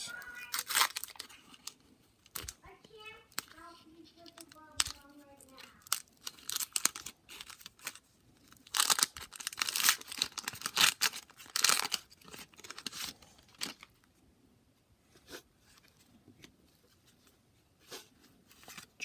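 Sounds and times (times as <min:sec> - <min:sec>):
wax paper wrapper tearing: 0:00.4 - 0:02.7, 0:03.3 - 0:13.9.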